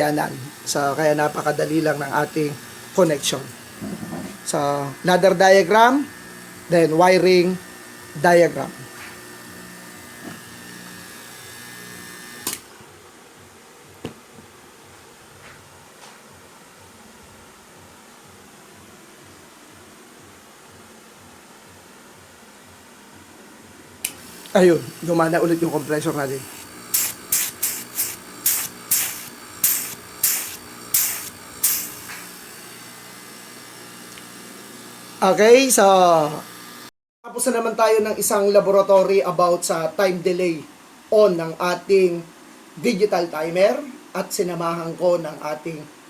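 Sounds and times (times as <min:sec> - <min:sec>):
aircon compressor humming: 0:00.0 - 0:13.0, 0:24.0 - 0:36.9
sharp hissing spurts: 0:24.1 - 0:35.5.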